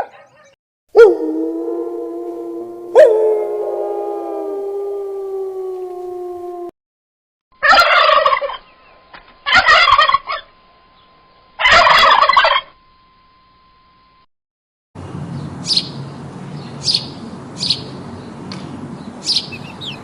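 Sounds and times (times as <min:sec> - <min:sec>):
turkey gobbling: 0:07.6 - 0:08.7, 0:09.4 - 0:10.5, 0:11.6 - 0:12.7, 0:19.4 - 0:20.0.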